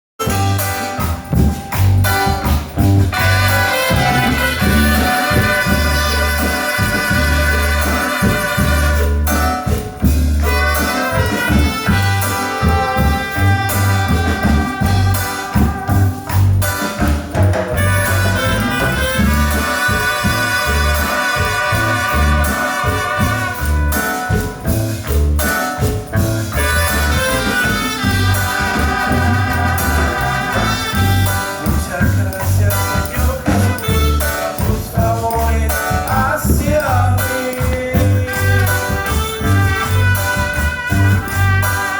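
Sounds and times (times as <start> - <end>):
upbeat brass music with bass beat: 0.2 - 41.9.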